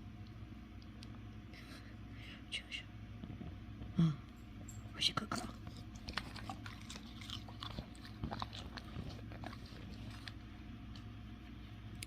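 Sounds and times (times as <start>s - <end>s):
faint low hum: 0.0s - 12.0s
dog crunching a snack: 5.2s - 11.2s.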